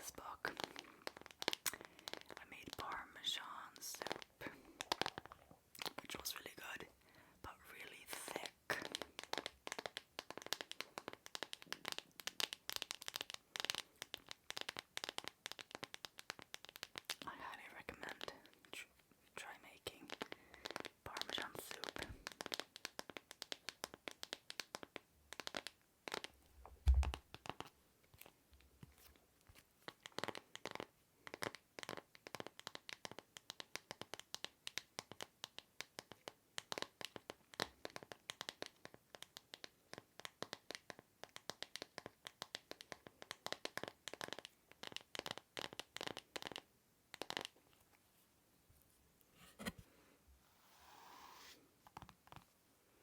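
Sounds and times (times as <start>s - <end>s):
fingers tapping and scratching object: 8.8s - 17.2s, 49.4s - 49.8s
low thump: 26.8s - 27.2s.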